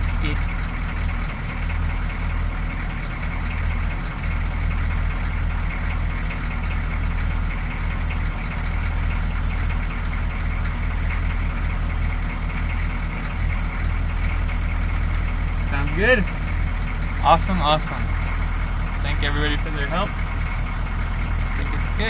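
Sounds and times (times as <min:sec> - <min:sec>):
diesel engine idling: 0:00.0 - 0:22.0.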